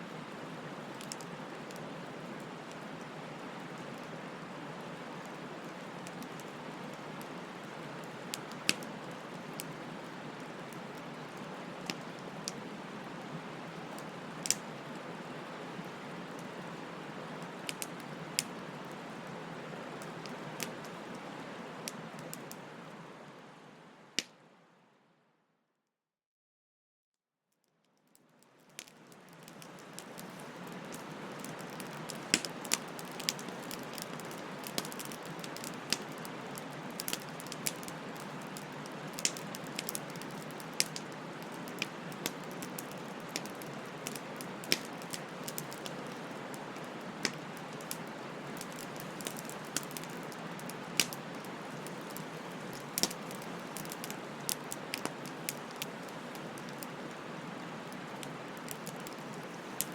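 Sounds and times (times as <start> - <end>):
wood fire crackling and popping: 0.3 - 12.7, 13.6 - 22.6, 28.2 - 59.9
fire hissing: 29.9 - 59.9.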